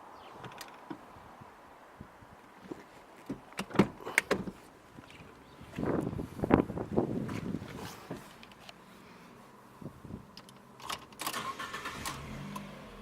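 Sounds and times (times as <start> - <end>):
car door clicks and knocks: 3.3 - 4.6
scraping rustle: 7.2 - 8.8.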